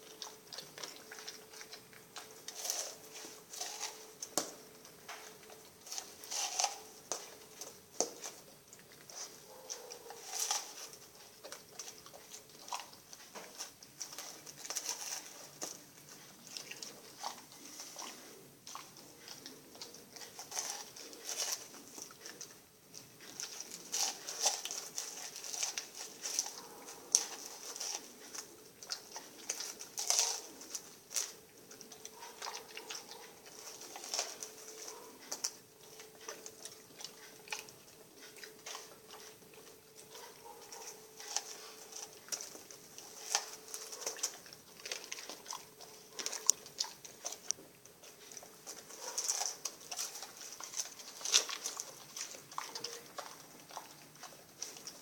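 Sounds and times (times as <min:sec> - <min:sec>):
dog chewing and biting: 0:00.0 - 0:55.0.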